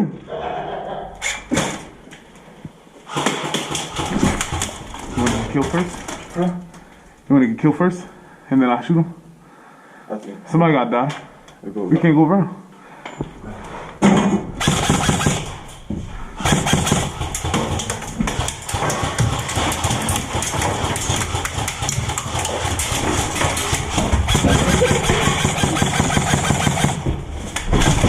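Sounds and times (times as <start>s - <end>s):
airsoft guns firing full-auto bursts: 3.1s - 5.3s, 14.6s - 15.6s, 16.4s - 27.0s.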